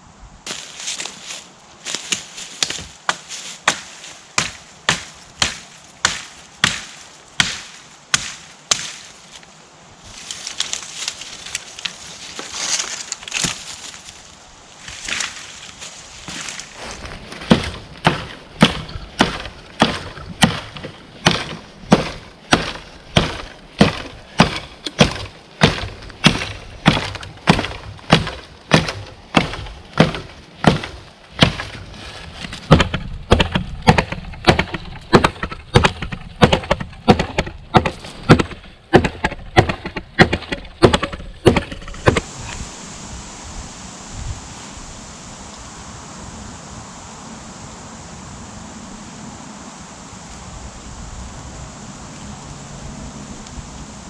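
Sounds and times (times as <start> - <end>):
wood being chopped: 1.9 - 9.2, 10.2 - 14.1, 14.9 - 42.3.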